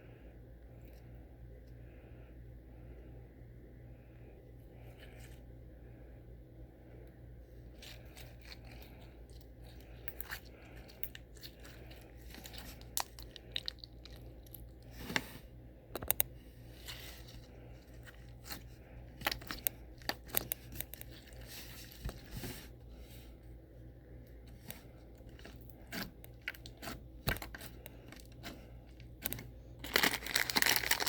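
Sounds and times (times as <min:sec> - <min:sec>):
crunchy clicks and crackles: 0:15.9 - 0:22.2, 0:24.5 - 0:31.0.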